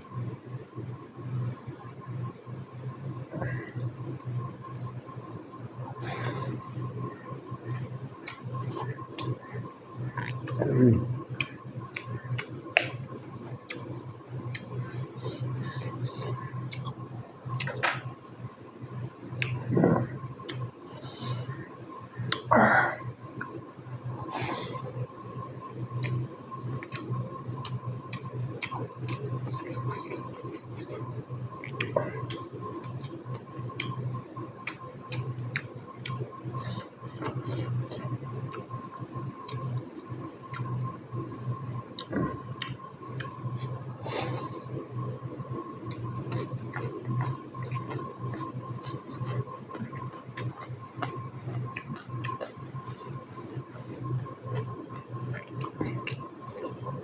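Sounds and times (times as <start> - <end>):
low electrical hum: 0.0 - 57.0
wet chewing and mouth clicks: 2.9 - 9.5, 10.1 - 22.5, 23.1 - 57.0
wet mouth clicks and smacks: 17.6 - 18.1, 19.4 - 19.6, 41.4 - 43.4, 45.9 - 56.9.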